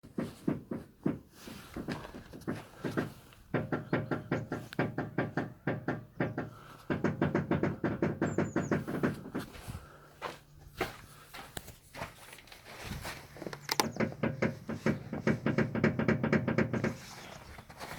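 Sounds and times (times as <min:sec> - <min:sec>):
steering rapid clicking: 0:13.5 - 0:17.0.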